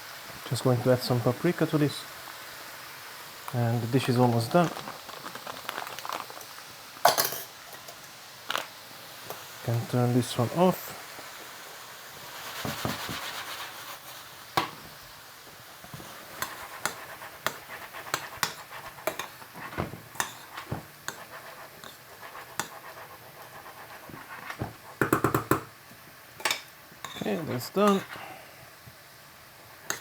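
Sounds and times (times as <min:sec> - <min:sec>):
frying sizzle: 0:00.0 - 0:30.0
metal utensil scraping cookware: 0:20.2 - 0:21.2, 0:26.4 - 0:28.2.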